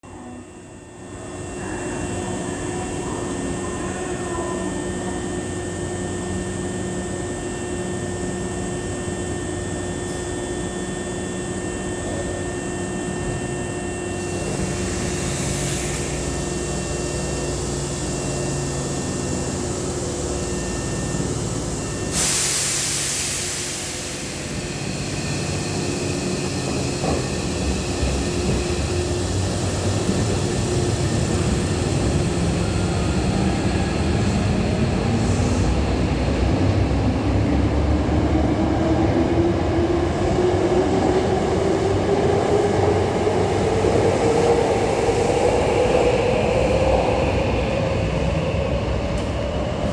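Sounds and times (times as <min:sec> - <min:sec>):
electric train humming: 0:00.2 - 0:49.9
train air hiss: 0:22.1 - 0:24.8, 0:35.1 - 0:35.8.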